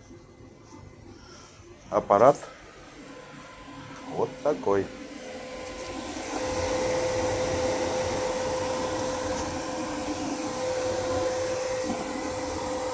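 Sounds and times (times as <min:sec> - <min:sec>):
constant whine: 0:00.0 - 0:12.9
welder cooling fan hiss: 0:00.0 - 0:12.9.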